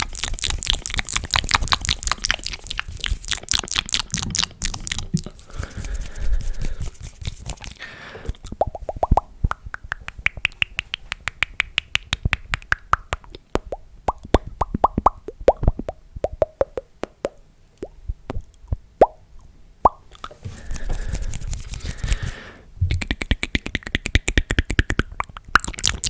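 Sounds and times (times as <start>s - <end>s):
wet tongue and lip pops: 0.0s - 6.1s, 7.1s - 19.2s, 19.8s - 26.0s
mouth clicks: 0.0s - 19.2s, 19.9s - 26.0s.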